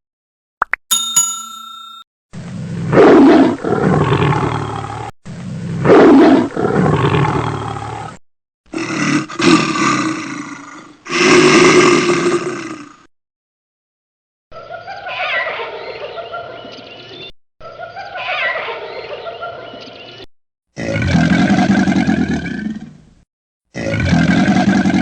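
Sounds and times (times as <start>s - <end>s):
bell-like ding: 0.9s - 2.1s
big cat roaring: 2.8s - 13.1s, 20.8s - 23.0s, 23.7s - 25.0s.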